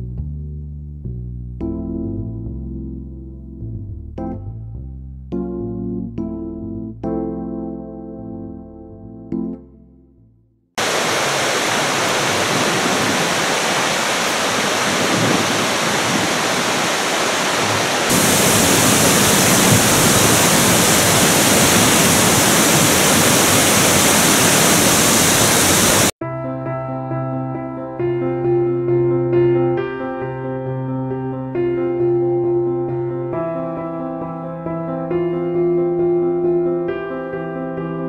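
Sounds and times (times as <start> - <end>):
soft piano music: 1.6 - 10.3, 26.2 - 38.0
waterfall rushing: 10.8 - 26.2.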